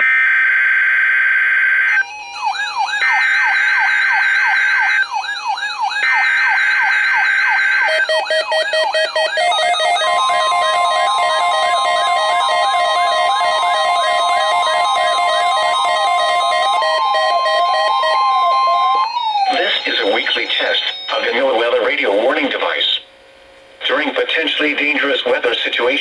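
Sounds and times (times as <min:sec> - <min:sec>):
wailing electronic siren tones: 0:00.0 - 0:22.4
steady alert tone: 0:07.2 - 0:22.2.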